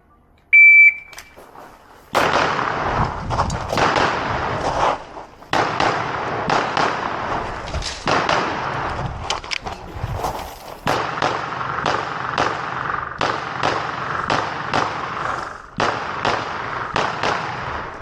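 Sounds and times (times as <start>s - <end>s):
pistol shots: 2.1s - 3.1s, 3.7s - 4.6s, 5.5s - 8.9s, 10.8s - 18.0s.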